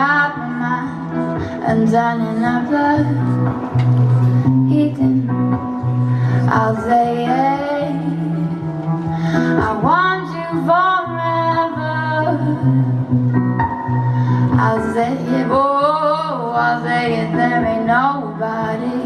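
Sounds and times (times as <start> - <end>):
woman singing: 0.0 - 13.0, 14.4 - 19.0
guitar accompaniment: 0.0 - 19.0.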